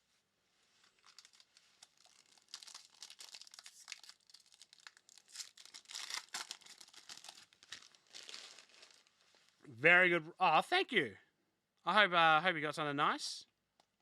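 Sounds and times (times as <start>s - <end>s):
foil wrapper crinkling and tearing: 0.8s - 9.5s.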